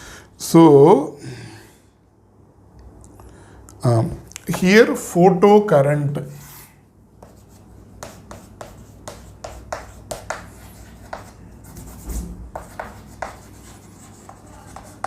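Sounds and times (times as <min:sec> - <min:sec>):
pen scratching on surface: 0:07.2 - 0:15.0.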